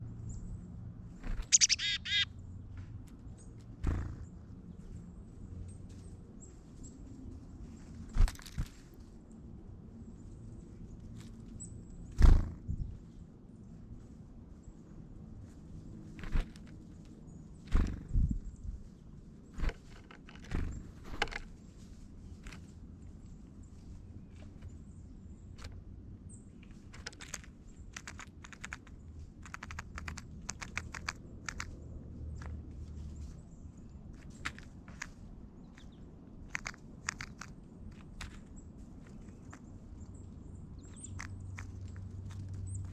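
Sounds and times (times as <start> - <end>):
songbirds chirping: 0.0 - 42.9
birds pecking at seeds: 1.3 - 2.2, 26.6 - 33.3, 33.9 - 42.9.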